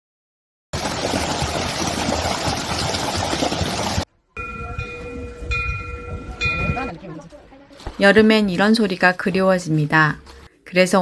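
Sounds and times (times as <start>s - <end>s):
stream rushing over rocks: 0.8s - 4.0s
wind bell ringing: 4.4s - 7.0s.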